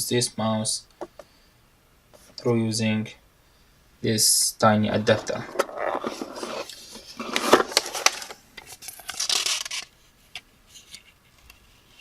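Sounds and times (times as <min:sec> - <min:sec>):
paper and packaging rustling: 0:05.0 - 0:09.9.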